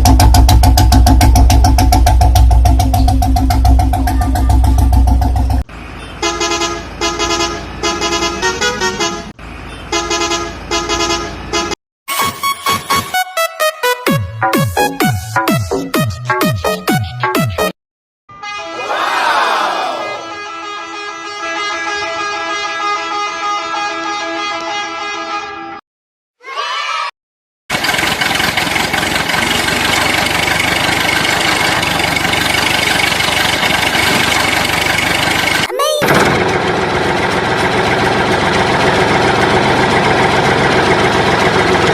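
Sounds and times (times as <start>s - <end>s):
vehicle horn tooting: 6.0s - 9.3s, 9.9s - 11.8s, 18.4s - 25.8s
electronic music with a beat: 13.2s - 17.8s
engine noise: 27.7s - 41.9s.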